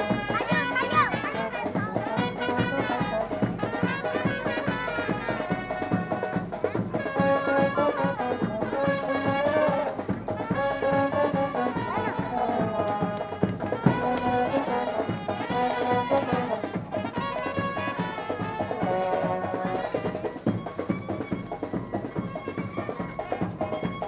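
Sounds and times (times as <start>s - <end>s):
brass band trumpets playing: 0.0s - 20.9s
drums keeping a steady beat: 0.0s - 24.0s.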